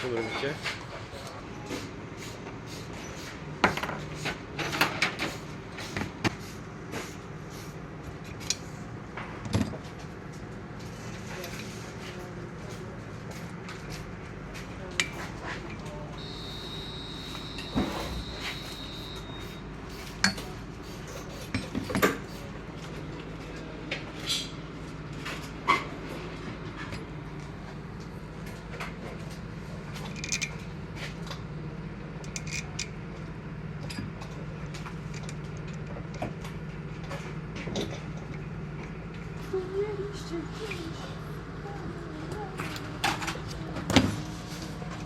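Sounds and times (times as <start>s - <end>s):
steady low hum: 0.0s - 45.0s
metal tools clinking and knocking: 30.0s - 30.6s, 32.2s - 33.0s.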